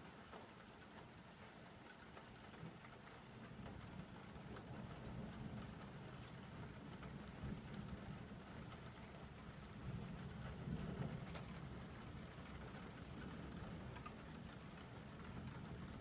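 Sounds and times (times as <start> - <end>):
rain falling with drips: 0.0 - 16.0
distant thunder rumble: 3.6 - 16.0.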